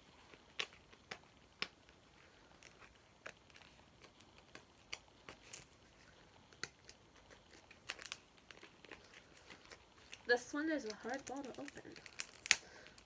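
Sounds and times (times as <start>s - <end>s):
plastic capsule clicks and crinkles: 6.5s - 13.0s.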